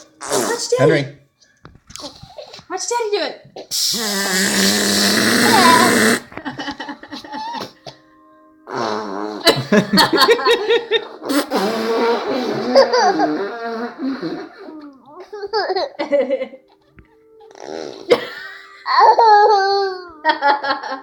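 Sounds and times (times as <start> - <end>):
fake fart noise: 0.0 - 0.9, 3.7 - 6.6, 8.7 - 9.8, 11.2 - 14.7, 17.5 - 18.3
laughter: 6.3 - 7.8, 9.4 - 11.2, 16.0 - 16.6, 18.1 - 19.2, 20.2 - 21.0.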